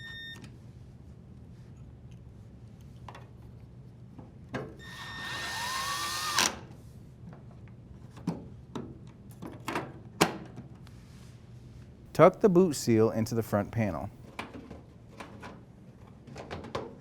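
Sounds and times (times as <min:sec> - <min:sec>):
cordless drill driving screw: 0:04.9 - 0:06.6.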